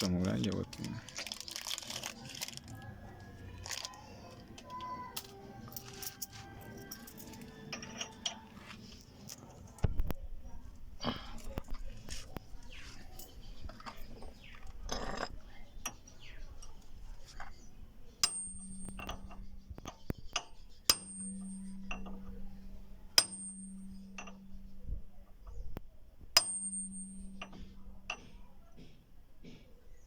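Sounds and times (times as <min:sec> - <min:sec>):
tools clinking: 0:03.6 - 0:09.9, 0:11.3 - 0:25.6, 0:26.4 - 0:28.9
hammer striking steel: 0:18.2 - 0:19.4, 0:20.9 - 0:22.4, 0:23.2 - 0:24.6, 0:26.4 - 0:28.5.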